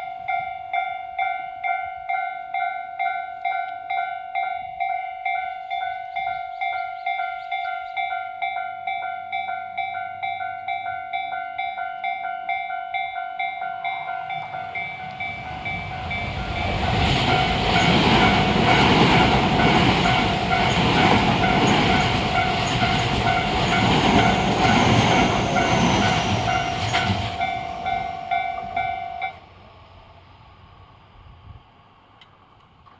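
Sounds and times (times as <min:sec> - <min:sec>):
level crossing alarm dinging: 0:00.0 - 0:29.4
train wheels running over rails: 0:13.9 - 0:29.8.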